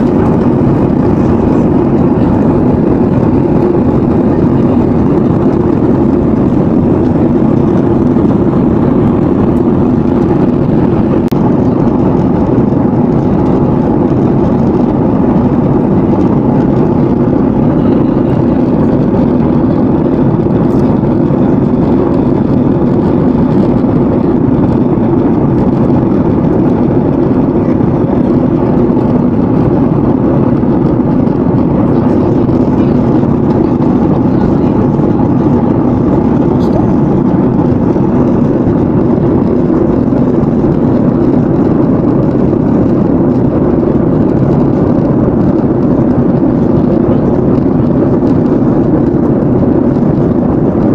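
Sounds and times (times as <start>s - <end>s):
airliner cabin engine rumble: 0.0s - 50.9s.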